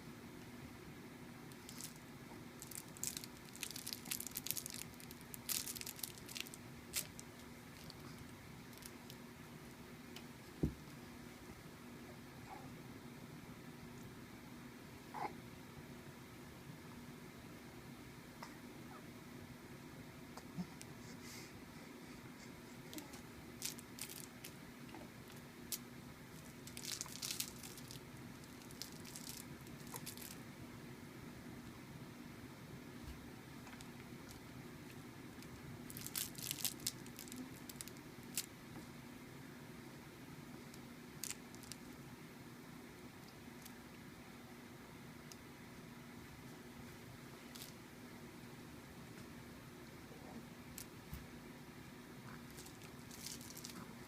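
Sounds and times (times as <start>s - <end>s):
crinkly fabric rustling: 1.5s - 9.2s, 23.0s - 24.6s, 25.7s - 30.4s, 35.9s - 38.5s, 41.2s - 42.0s, 46.8s - 47.8s, 52.3s - 54.0s
soft crackles: 1.5s - 11.0s, 22.4s - 30.4s, 33.1s - 39.0s, 40.5s - 42.1s, 46.4s - 47.8s, 52.2s - 54.0s.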